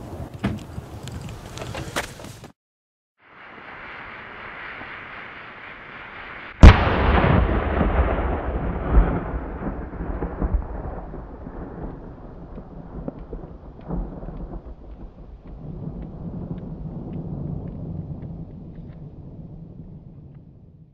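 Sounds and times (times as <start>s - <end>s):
rocket explosion bang: 3.8s - 14.2s.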